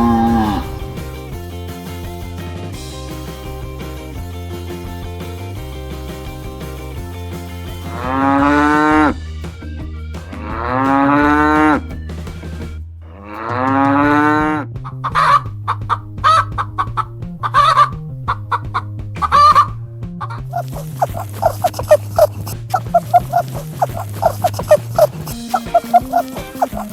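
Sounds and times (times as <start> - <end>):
cow mooing: 0.0 - 1.2, 13.1 - 14.6
chickens clucking: 15.0 - 26.9.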